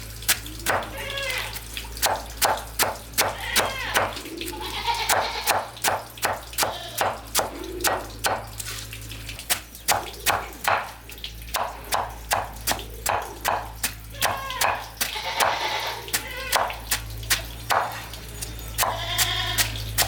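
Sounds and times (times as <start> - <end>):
sharp rhythmic chopping strikes: 2.0 - 4.1, 5.1 - 8.5, 9.5 - 15.5, 16.1 - 18.0.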